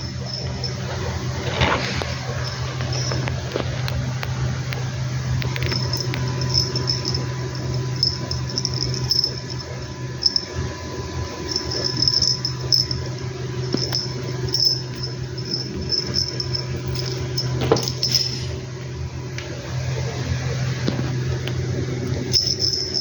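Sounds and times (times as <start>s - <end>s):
steady low hum: 0.0s - 23.0s
insects trilling: 5.4s - 18.2s.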